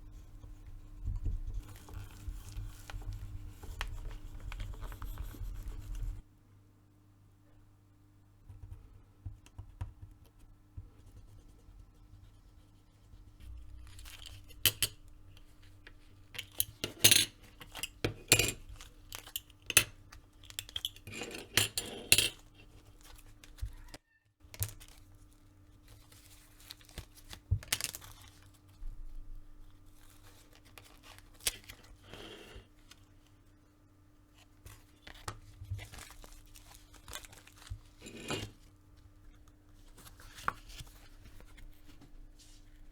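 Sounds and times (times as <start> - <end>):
faint steady hum: 0.0 - 42.9
leather tools scraping and tapping: 37.2 - 38.7.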